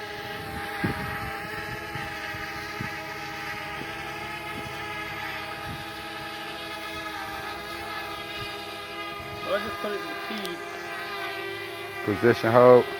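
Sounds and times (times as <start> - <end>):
wind buffeting microphone: 0.0 - 9.6
drone propellers whining: 0.0 - 12.9.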